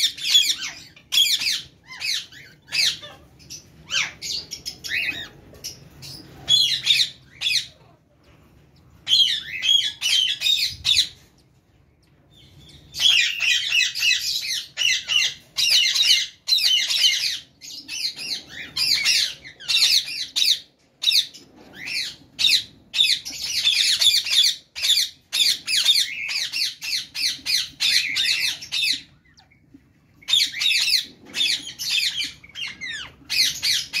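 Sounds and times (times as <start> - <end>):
parrots squawking: 0.0 - 34.0.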